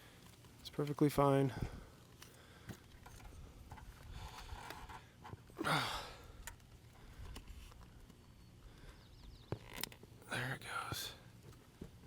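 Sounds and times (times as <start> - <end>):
man sighing heavily: 5.6 - 6.4.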